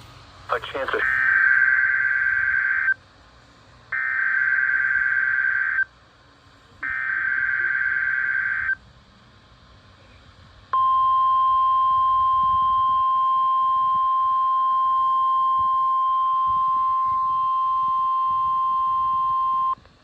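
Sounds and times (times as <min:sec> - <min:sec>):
faint radio hiss: 0:00.0 - 0:10.8
steady high-pitched alarm tone: 0:00.8 - 0:03.0, 0:03.9 - 0:05.9, 0:06.8 - 0:08.8, 0:10.8 - 0:19.8.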